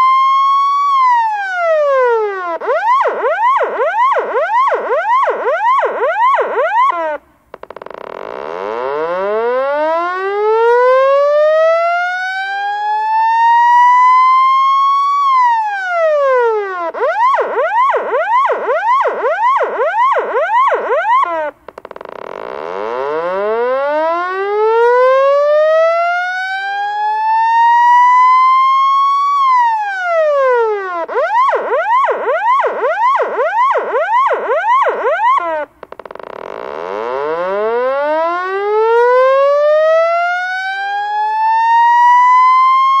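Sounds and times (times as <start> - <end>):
police siren fast yelp: 0.0 - 7.2, 8.8 - 21.6, 23.0 - 35.7, 37.1 - 43.0
police siren wail: 0.0 - 7.2, 8.7 - 21.8, 22.8 - 35.8, 37.0 - 43.0.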